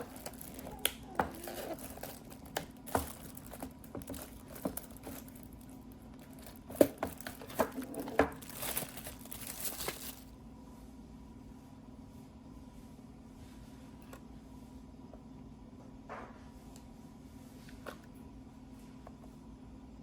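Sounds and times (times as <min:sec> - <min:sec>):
crinkling and rustling: 0:00.0 - 0:10.3.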